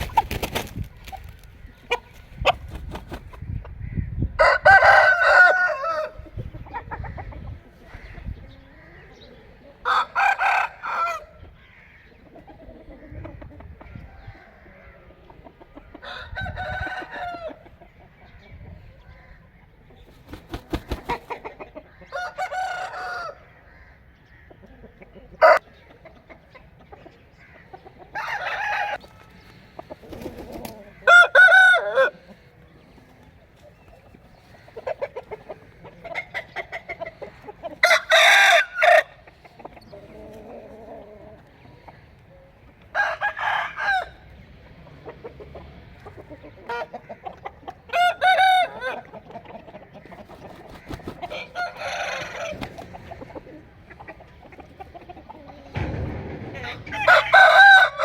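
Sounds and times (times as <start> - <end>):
roosters crowing: 4.4 - 6.3, 9.8 - 11.4, 16.0 - 17.7, 22.0 - 24.0, 28.1 - 29.1, 30.0 - 32.4, 37.2 - 39.3, 42.9 - 44.5, 47.9 - 49.2, 50.1 - 53.7, 55.6 - 58.0.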